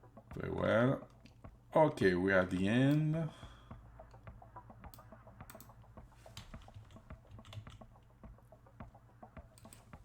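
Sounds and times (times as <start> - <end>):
computer keys clicking: 4.9 - 5.8, 6.4 - 7.9.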